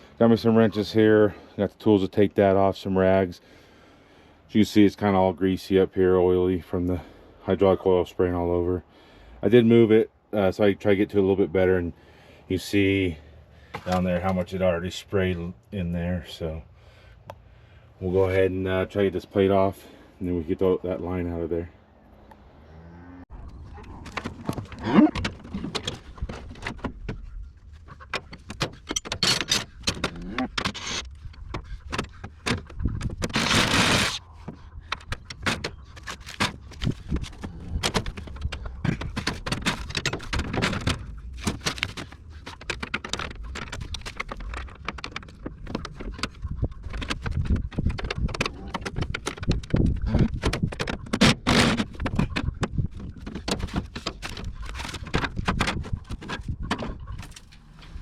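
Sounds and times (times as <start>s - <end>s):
metal clinks and knocks: 28.0s - 33.2s
rushing scrape: 32.9s - 34.5s.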